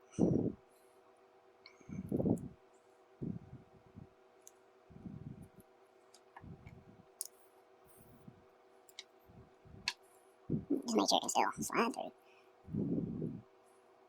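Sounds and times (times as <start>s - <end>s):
soft low rustles: 3.2s - 4.2s, 4.9s - 5.7s, 6.3s - 7.1s, 12.7s - 13.5s.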